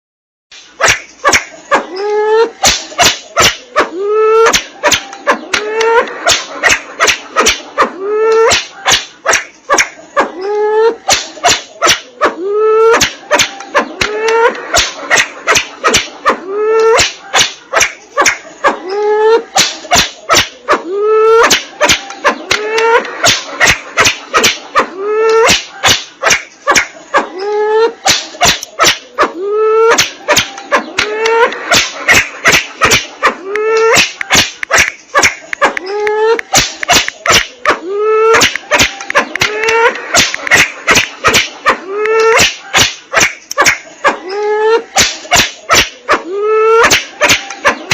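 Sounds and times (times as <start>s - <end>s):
pheasant clicking notes: 30.0s - 42.4s.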